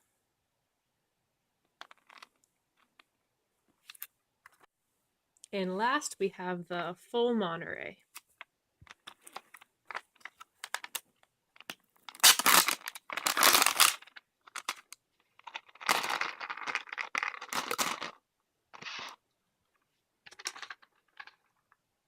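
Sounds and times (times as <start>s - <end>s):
plastic snack packet crinkling: 1.8s - 3.0s, 8.9s - 18.2s
plastic packet tearing: 12.1s - 18.2s.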